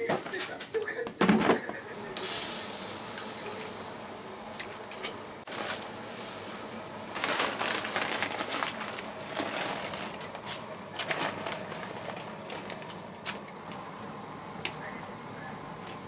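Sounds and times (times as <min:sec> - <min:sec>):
kitchen hissing: 0:01.7 - 0:04.4.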